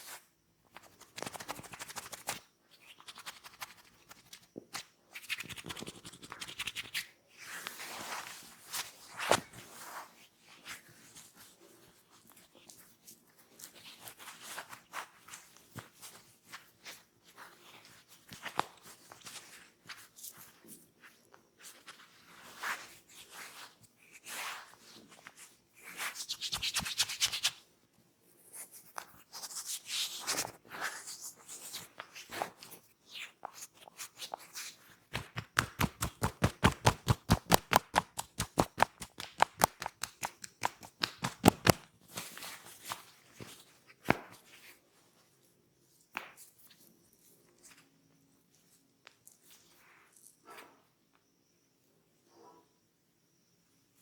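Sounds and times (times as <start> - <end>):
hands rubbing and patting head: 0.8 - 7.1, 33.4 - 44.4.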